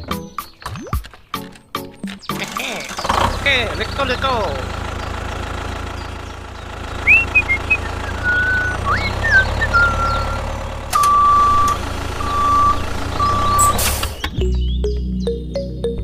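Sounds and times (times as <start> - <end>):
vehicle engine humming: 1.4 - 16.0
reversing alarm beeps: 7.1 - 10.4, 11.0 - 13.9
short whistling chirps: 7.1 - 10.4.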